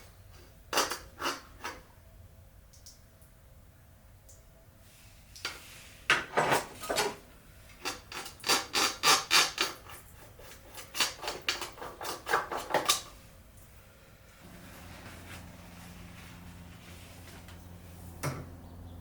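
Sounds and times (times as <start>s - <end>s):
quick rubbing scrapes: 14.4s - 18.2s.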